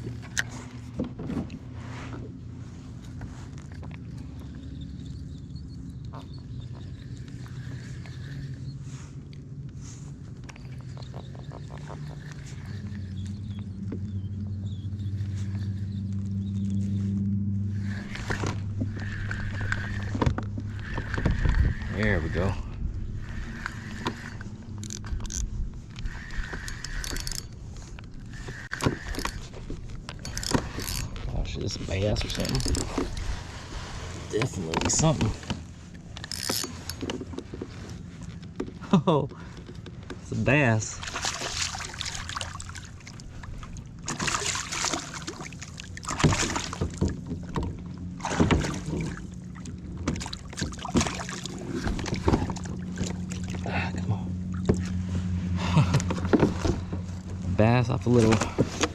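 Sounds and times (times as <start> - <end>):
rustling and knocks in a kayak: 0.0 - 4.6, 9.0 - 58.9
fishing reel cranking clicks: 23.2 - 27.6, 30.1 - 31.2, 36.2 - 37.0
water splashes: 40.3 - 55.1.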